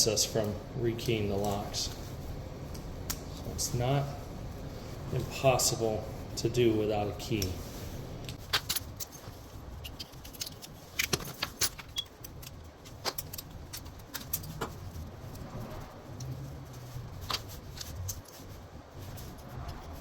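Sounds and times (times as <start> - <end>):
low steady hum: 0.0 - 20.0
metallic clicks of lock parts: 8.2 - 14.7.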